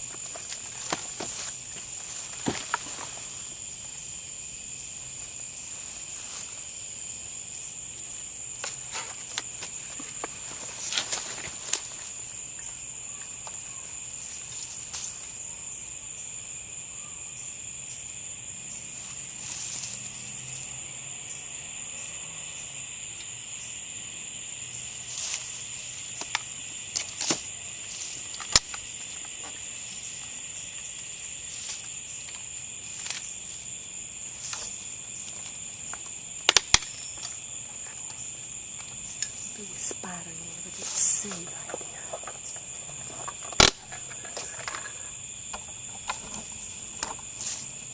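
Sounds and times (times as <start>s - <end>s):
high-pitched insect chorus: 0.0s - 47.9s
sharp clicks and snaps: 36.4s - 37.3s.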